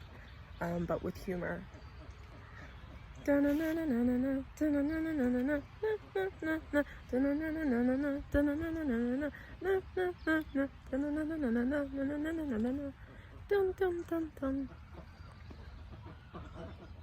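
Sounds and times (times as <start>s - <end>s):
woman humming a slow tune: 3.2s - 14.8s.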